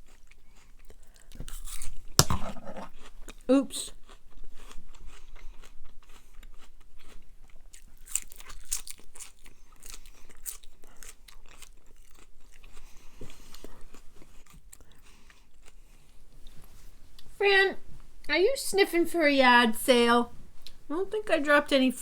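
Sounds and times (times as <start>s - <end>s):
person chewing food: 0.0s - 17.3s.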